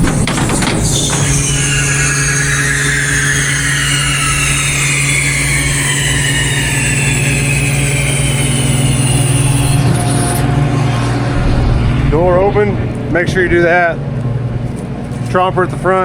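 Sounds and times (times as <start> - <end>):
farm machinery engine running: 0.0 - 11.3
high mechanical whine: 0.0 - 15.2.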